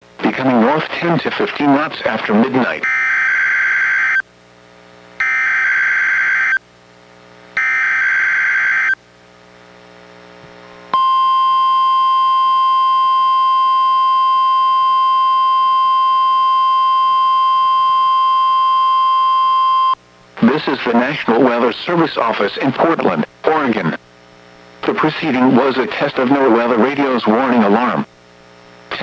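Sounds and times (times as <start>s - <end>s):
steady warning alarm tone: 2.6s - 4.2s, 5.2s - 6.6s, 7.6s - 9.0s, 11.0s - 21.0s.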